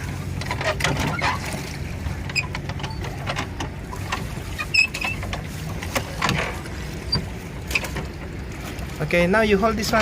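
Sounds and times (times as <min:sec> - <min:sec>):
boat mechanism clicking and creaking: 0:00.0 - 0:10.0.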